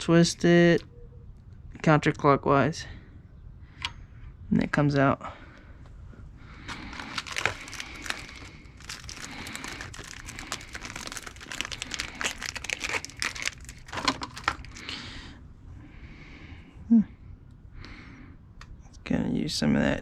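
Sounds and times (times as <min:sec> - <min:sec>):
crinkling and rustling: 0:06.6 - 0:14.9.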